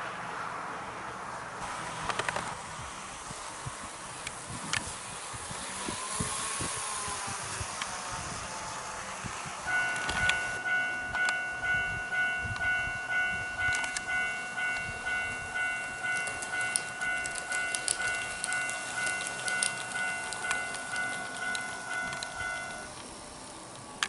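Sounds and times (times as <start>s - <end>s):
model train wheels clicking: 1.9s - 24.0s
electronic crossing bell ringing: 9.7s - 23.4s.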